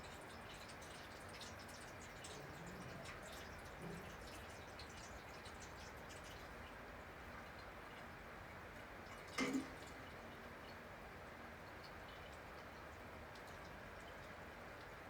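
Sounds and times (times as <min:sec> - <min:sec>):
water dripping: 0:00.0 - 0:10.9.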